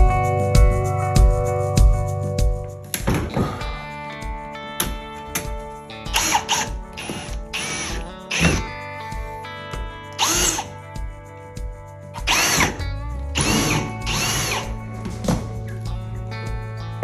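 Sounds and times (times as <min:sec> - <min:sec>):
power drill driving screws: 0:10.2 - 0:10.6.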